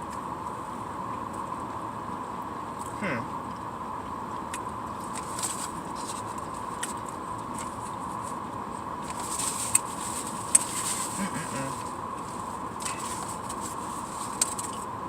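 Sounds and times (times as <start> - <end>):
steady high-pitched hum: 0.0 - 15.0
person chewing food: 4.3 - 14.8.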